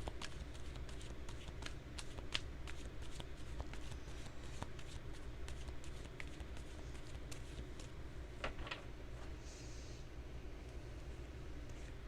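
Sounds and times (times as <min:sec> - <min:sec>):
cards being shuffled: 0:00.0 - 0:08.8.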